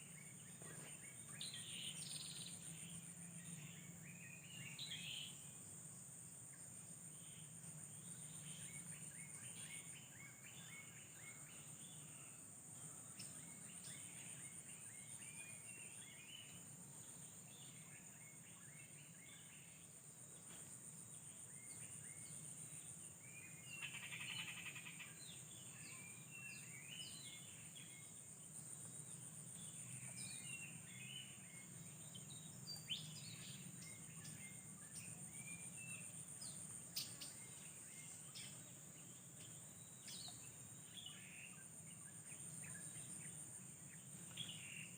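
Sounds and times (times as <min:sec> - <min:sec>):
bird chirps: 0:23.4 - 0:38.8.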